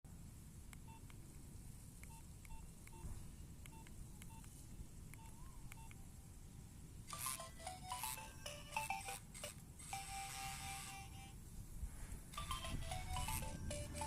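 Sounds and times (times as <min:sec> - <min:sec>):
phone keypad beeps: 0:00.8 - 0:01.1, 0:02.0 - 0:03.1, 0:03.7 - 0:06.0, 0:07.1 - 0:11.4, 0:12.4 - 0:14.0.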